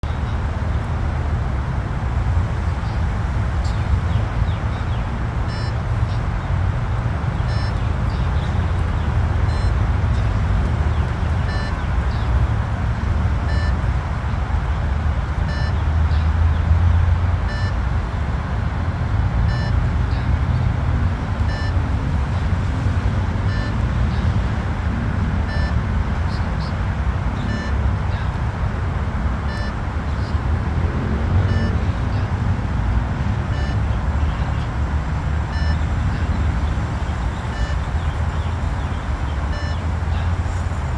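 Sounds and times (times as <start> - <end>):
short electronic beeps: 5.5 - 6.2, 7.4 - 12.4, 13.4 - 13.9, 15.4 - 16.2, 17.5 - 17.8, 19.5 - 20.7, 21.4 - 24.6, 25.4 - 26.8, 27.4 - 28.4, 29.5 - 30.5, 31.4 - 32.4, 33.5 - 40.7.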